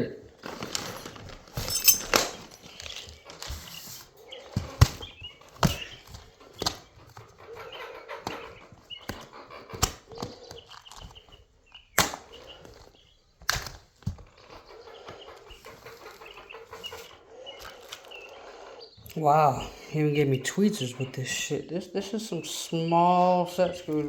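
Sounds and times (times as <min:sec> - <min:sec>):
hand tools clicking and knocking: 0:00.4 - 0:18.2
faint chirping: 0:01.0 - 0:24.0.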